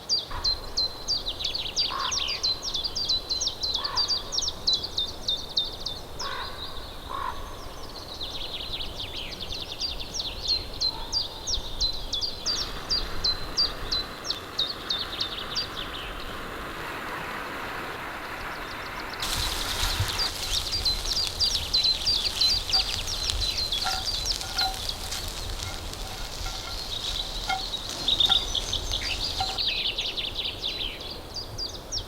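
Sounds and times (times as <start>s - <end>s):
songbirds chirping: 0.0s - 32.0s
steady hiss: 11.5s - 31.4s.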